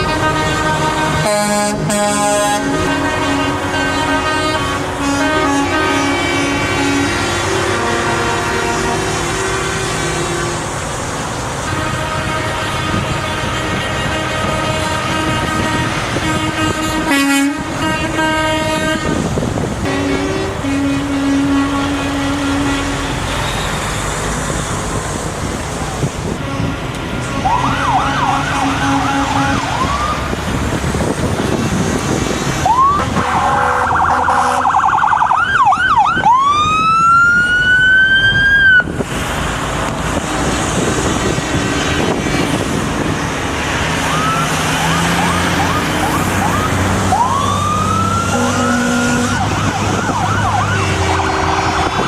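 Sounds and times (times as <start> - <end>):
horn blasts: 0.0 - 10.8, 11.6 - 25.0, 26.0 - 30.3, 32.7 - 35.1, 44.2 - 52.0
emergency sirens wailing: 0.0 - 52.0
engine and traffic noise: 0.0 - 52.0.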